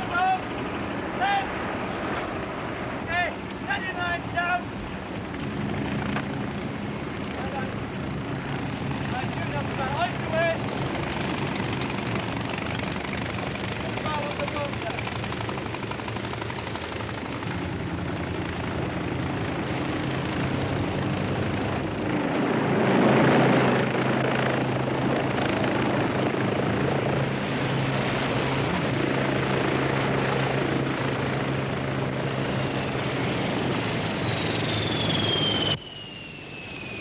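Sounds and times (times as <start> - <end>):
helicopter rotor and engine roar: 0.0 - 37.0
high whine sliding down: 33.2 - 37.0.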